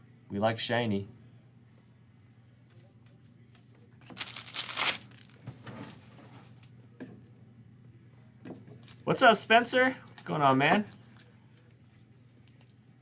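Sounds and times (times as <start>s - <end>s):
foil wrapper crinkling and tearing: 4.0s - 5.4s.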